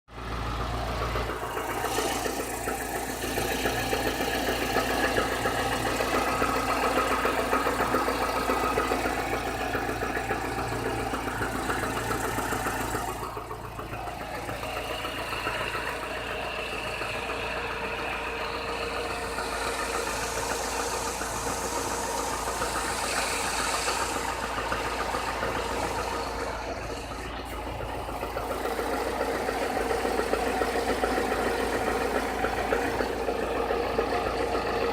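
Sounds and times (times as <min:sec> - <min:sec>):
car engine running: 0:00.1 - 0:34.9
engine knocking: 0:00.1 - 0:34.9.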